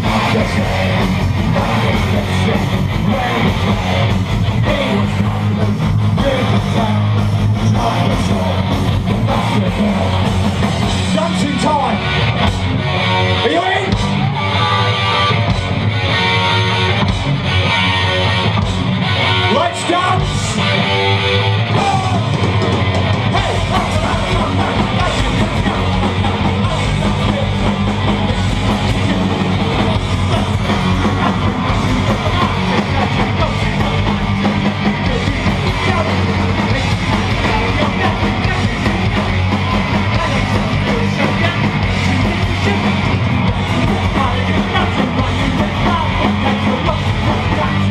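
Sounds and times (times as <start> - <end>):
person yelling singing: 0.0 - 10.3, 21.6 - 22.6, 23.2 - 47.9
electric guitar: 0.0 - 47.9
heavy rock music: 0.0 - 47.9.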